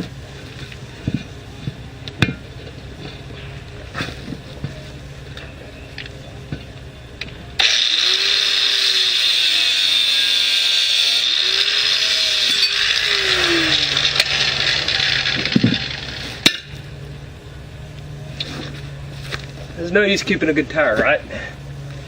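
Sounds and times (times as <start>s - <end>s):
power tool whining: 7.6s - 17.0s.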